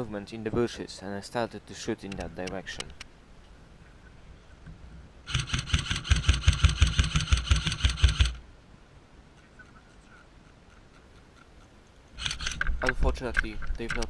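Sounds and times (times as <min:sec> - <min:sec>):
airsoft gun rapid firing: 0:05.3 - 0:08.4.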